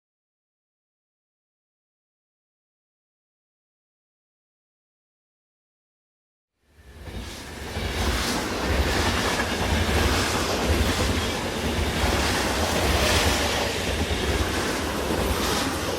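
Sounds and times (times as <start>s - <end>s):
train rumbling along track: 6.7s - 15.9s.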